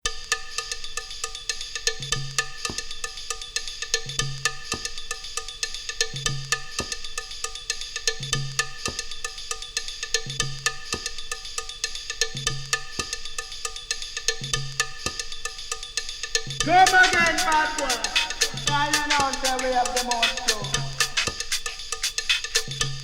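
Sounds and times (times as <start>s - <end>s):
woodblock-like percussion clicks: 16.2s - 23.0s.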